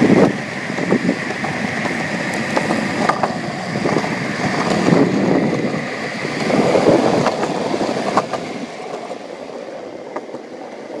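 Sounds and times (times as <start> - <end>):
longboard wheels rolling on pavement: 0.0 - 11.0.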